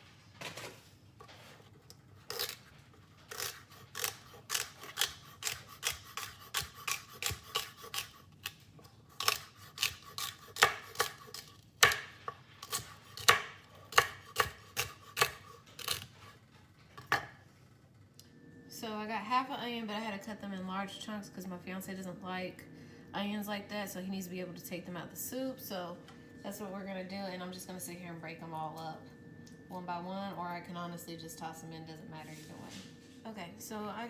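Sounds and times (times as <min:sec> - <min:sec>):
knife chopping on cutting board: 0:03.3 - 0:08.2, 0:09.2 - 0:16.0.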